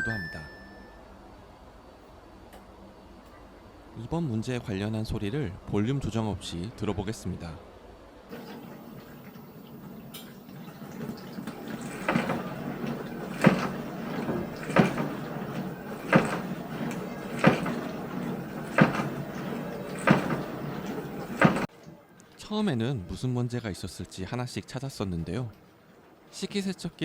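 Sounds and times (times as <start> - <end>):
dishwasher water spraying: 8.3 - 21.7
loud knocking inside dishwasher: 8.3 - 21.7.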